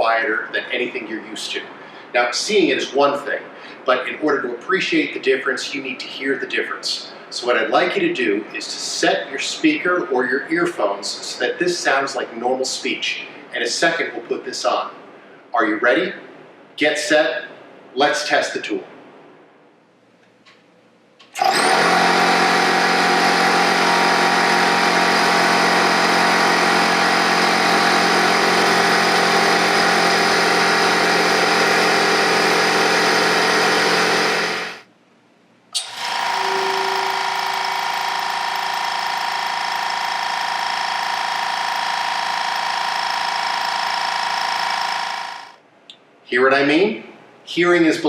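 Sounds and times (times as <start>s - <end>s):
air compressor running: 21.2s - 34.9s, 35.8s - 45.6s.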